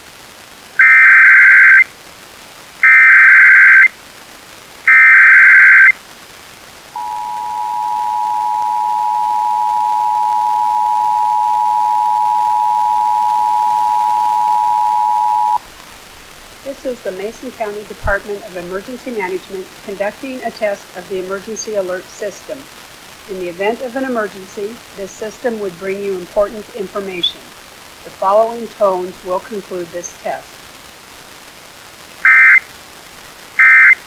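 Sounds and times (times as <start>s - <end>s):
digital data tone bursts: 0.8s - 1.8s, 2.8s - 3.9s, 4.9s - 5.9s, 7.0s - 15.6s, 32.2s - 32.7s, 33.6s - 34.0s
two-tone attention signal: 7.0s - 15.6s, 32.3s - 32.6s, 33.6s - 34.0s.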